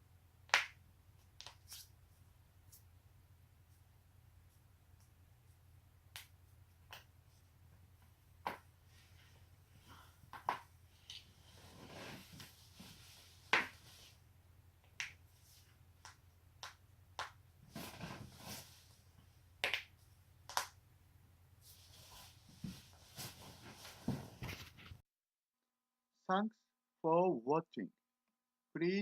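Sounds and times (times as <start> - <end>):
soft rustling: 10.8 - 14.3, 17.7 - 19.2, 21.6 - 25.0.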